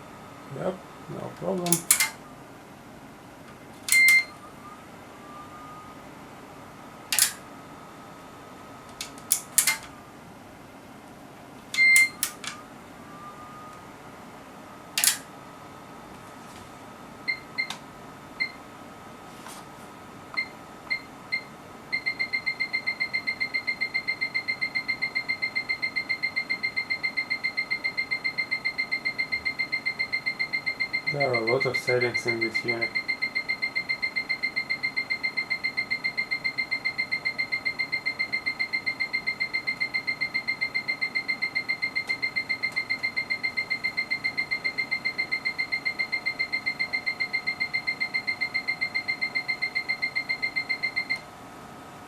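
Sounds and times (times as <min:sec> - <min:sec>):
sharp relay clicks: 0:01.4 - 0:02.2, 0:03.8 - 0:04.3, 0:07.1 - 0:07.5, 0:08.9 - 0:10.0, 0:11.8 - 0:12.6, 0:15.0 - 0:15.3
short high beep: 0:03.9 - 0:05.9
fast train of short beeps: 0:03.9 - 0:06.0, 0:20.9 - 0:51.2.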